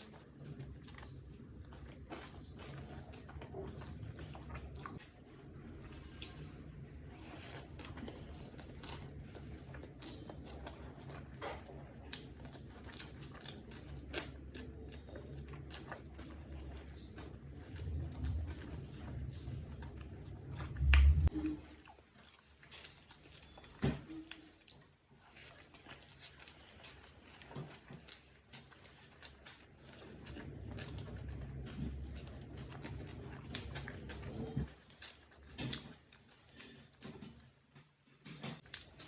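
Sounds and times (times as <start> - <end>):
person chewing food: 0.0 - 39.0.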